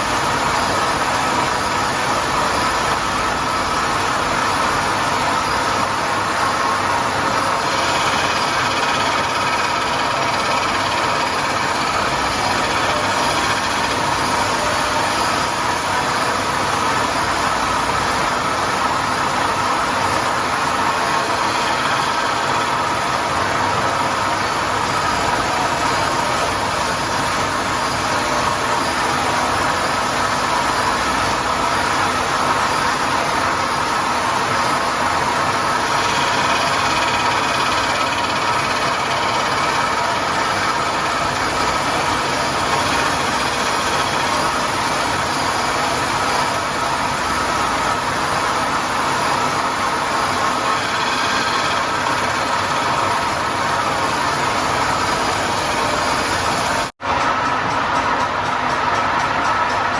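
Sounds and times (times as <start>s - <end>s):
grinding machine running: 0.0s - 59.9s.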